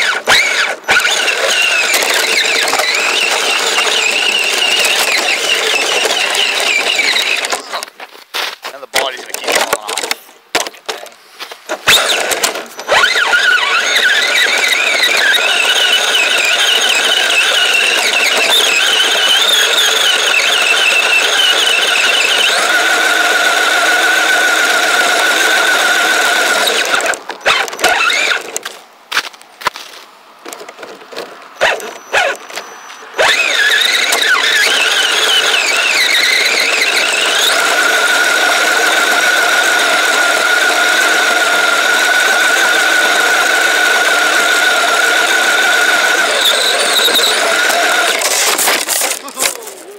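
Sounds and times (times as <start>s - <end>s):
electric toy motor whining: 0.0s - 7.9s, 11.8s - 28.6s, 31.2s - 49.9s
clicks: 0.9s - 7.9s, 8.8s - 15.4s, 26.6s - 29.5s, 30.4s - 34.8s.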